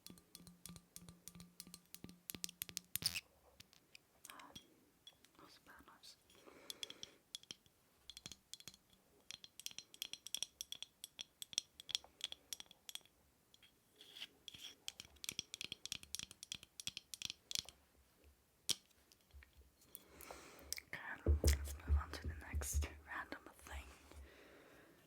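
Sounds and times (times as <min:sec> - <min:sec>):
tapping and scratching on hard object: 0:00.0 - 0:05.2, 0:06.7 - 0:17.7, 0:21.3 - 0:23.0.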